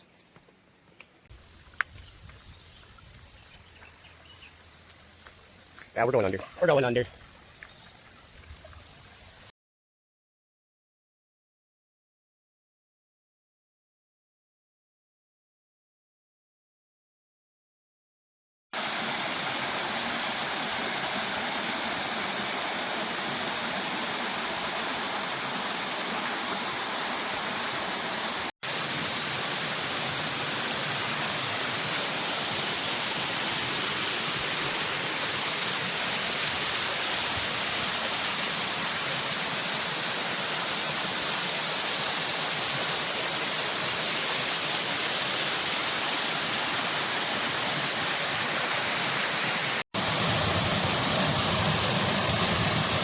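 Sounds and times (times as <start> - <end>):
waterfall rushing: 18.8 - 53.0.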